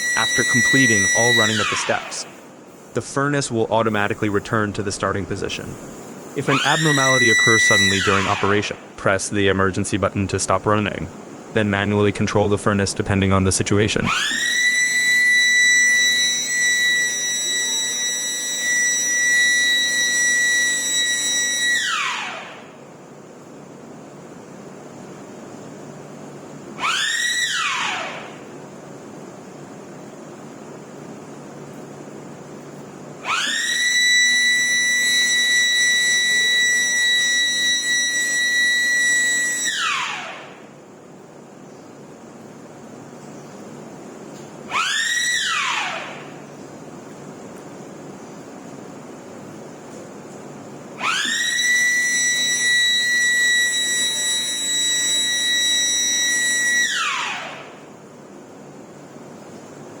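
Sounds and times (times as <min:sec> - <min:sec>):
warning siren: 0:00.0 - 0:02.5, 0:03.9 - 0:08.8, 0:13.9 - 0:22.8, 0:26.8 - 0:28.5, 0:33.2 - 0:40.7, 0:44.7 - 0:46.5, 0:51.0 - 0:57.9.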